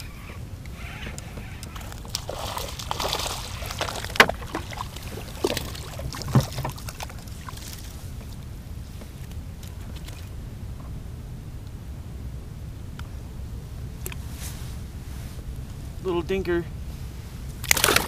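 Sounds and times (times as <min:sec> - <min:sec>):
water sloshing around kayak: 0:00.0 - 0:10.3, 0:17.5 - 0:18.0.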